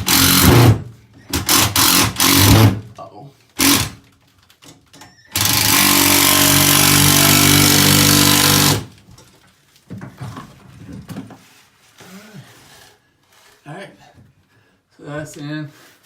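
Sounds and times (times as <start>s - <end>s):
power drill driving a screw: 0.0s - 2.8s, 3.6s - 4.0s, 5.3s - 8.9s
faint handling sounds: 9.0s - 16.0s.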